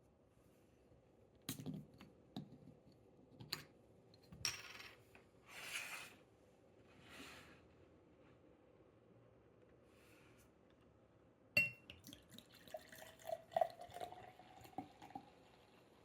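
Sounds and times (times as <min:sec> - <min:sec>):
glass bottle clinking: 0:11.6 - 0:12.0.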